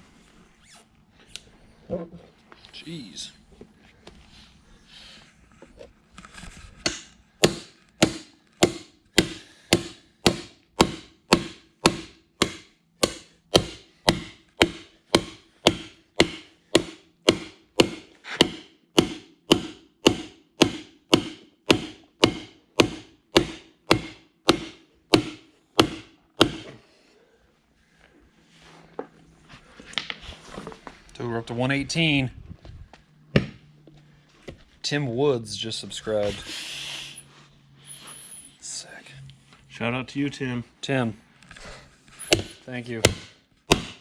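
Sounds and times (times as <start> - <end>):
hammer knocking on tire: 6.9 - 26.8, 42.3 - 44.0.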